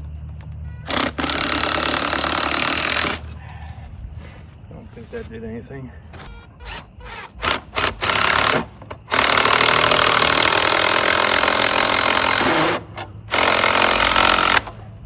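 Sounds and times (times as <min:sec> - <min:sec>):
power drill running: 0:00.8 - 0:03.3, 0:06.6 - 0:14.7.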